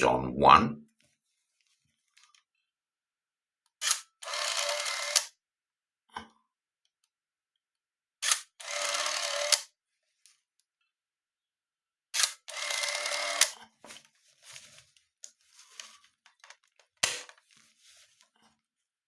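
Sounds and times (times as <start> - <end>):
camera shutter click: 3.8 - 5.3, 8.2 - 9.6, 12.2 - 13.5
motorized film advance whirring: 3.8 - 5.3, 8.2 - 9.6, 12.2 - 13.5.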